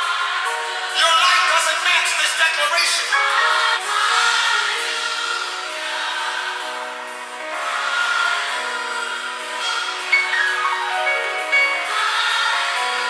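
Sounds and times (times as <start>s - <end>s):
song with long sung notes: 3.2s - 13.0s.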